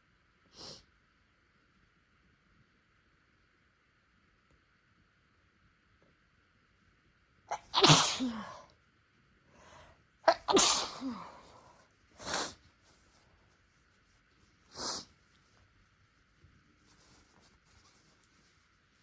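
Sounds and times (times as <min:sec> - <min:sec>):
puffs of breath: 0:00.5 - 0:00.9, 0:11.1 - 0:12.6, 0:14.7 - 0:15.2
person sneezing: 0:07.5 - 0:08.7, 0:10.3 - 0:11.6, 0:12.2 - 0:12.6.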